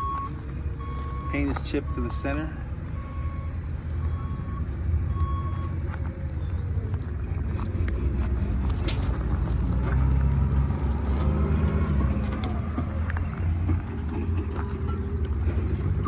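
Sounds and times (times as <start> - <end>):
large vehicle engine rumbling: 0.0 - 16.0
reversing beeper: 3.0 - 6.9.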